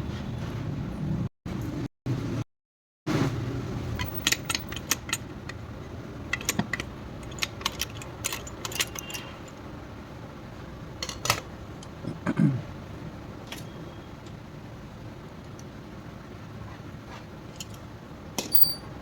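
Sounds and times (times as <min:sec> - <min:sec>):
metal parts clinking: 0:18.4 - 0:18.9.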